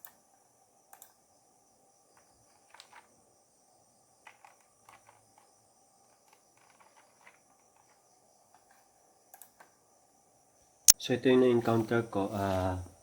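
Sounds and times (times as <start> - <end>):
faint high-pitched hiss: 0.0 - 13.0
faint scattered clicks: 0.9 - 1.2, 4.2 - 9.7.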